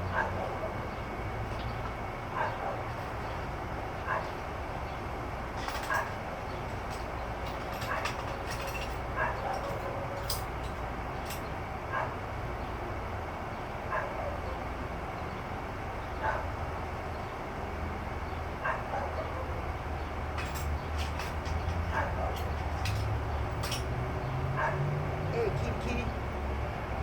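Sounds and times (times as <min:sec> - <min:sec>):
dog barking: 0:00.1 - 0:01.0, 0:02.4 - 0:02.9, 0:04.0 - 0:04.4, 0:09.2 - 0:10.2, 0:11.9 - 0:12.2, 0:13.9 - 0:14.6, 0:16.2 - 0:16.6, 0:18.6 - 0:19.6, 0:21.9 - 0:22.6, 0:24.6 - 0:24.9.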